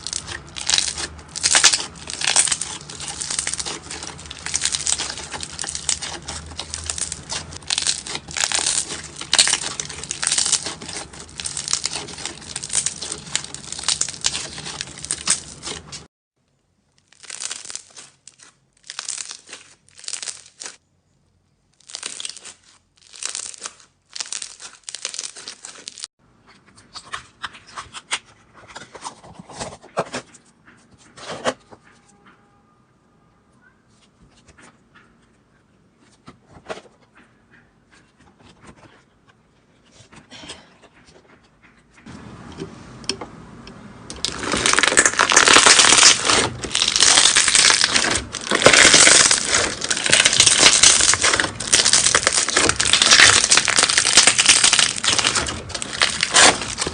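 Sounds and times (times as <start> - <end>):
slime squishing wet crackling: 0.0 - 16.1, 17.0 - 20.8, 21.8 - 26.1, 44.1 - 56.9.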